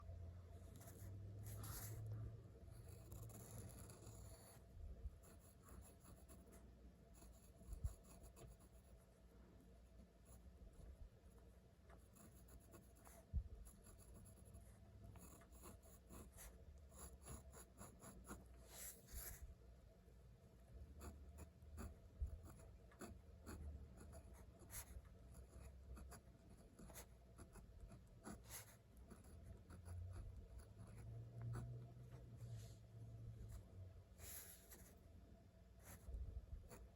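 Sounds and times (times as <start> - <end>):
pen scratching on paper: 0.6 - 2.1, 2.7 - 4.6, 5.2 - 6.6, 7.2 - 9.0, 12.0 - 19.4, 21.0 - 31.7, 35.8 - 36.9.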